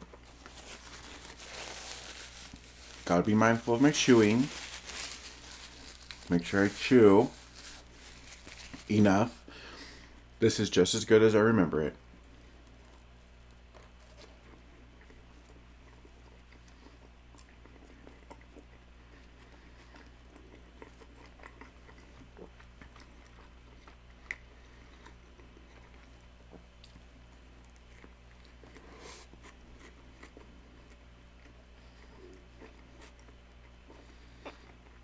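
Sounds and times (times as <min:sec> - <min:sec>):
person chewing: 0:00.0 - 0:10.2.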